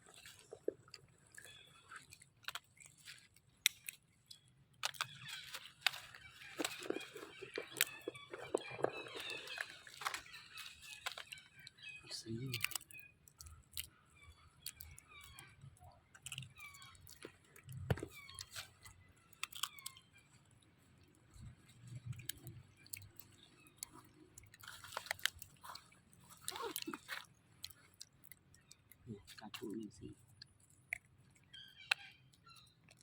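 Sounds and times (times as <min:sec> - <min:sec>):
monkey chewing food: 0:00.0 - 0:33.0
monkey squeaking: 0:04.9 - 0:13.5, 0:24.6 - 0:27.9.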